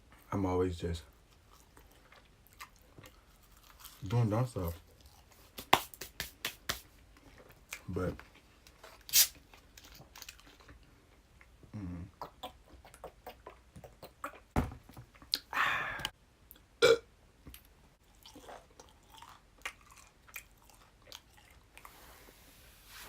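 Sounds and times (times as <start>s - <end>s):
chewing sandwich: 1.1s - 5.8s, 9.4s - 14.6s, 17.5s - 22.1s
low voiced sound: 11.7s - 12.2s
wet mouth clicks: 12.1s - 14.5s.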